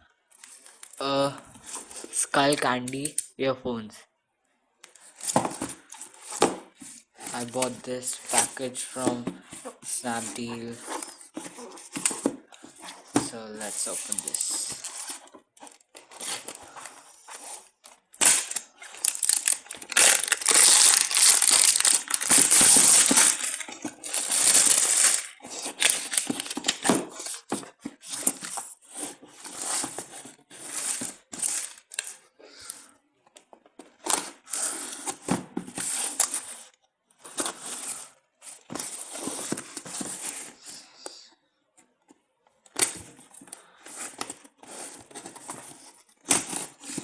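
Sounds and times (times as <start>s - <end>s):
packaging being torn and crinkled: 18.1s - 27.5s.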